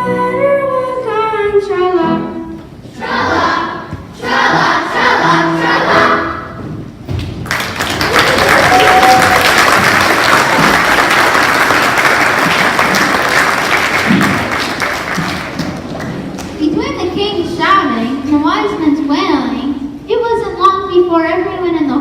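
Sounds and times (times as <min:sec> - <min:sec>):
children's choir singing: 0:02.9 - 0:06.6
audience applauding: 0:07.4 - 0:16.6.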